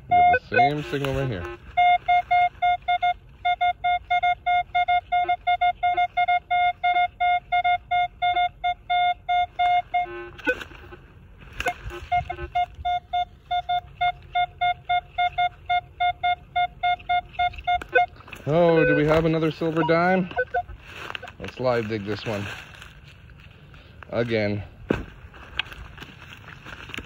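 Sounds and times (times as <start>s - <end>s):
metal detector beeping: 0.0s - 22.4s
rustle: 20.8s - 27.0s.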